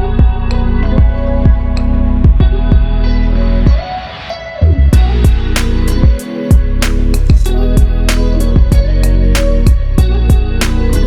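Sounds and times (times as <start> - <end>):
instrumental music with plucked guitar: 0.0 - 11.0.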